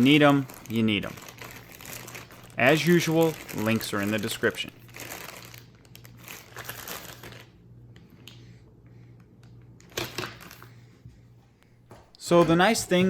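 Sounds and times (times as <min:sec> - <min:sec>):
plastic packaging crinkling: 0:00.0 - 0:07.6, 0:09.8 - 0:10.7.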